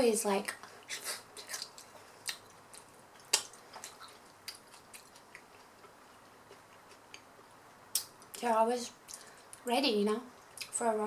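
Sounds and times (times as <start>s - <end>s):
wet chewing mouth clicks: 0.9s - 5.7s.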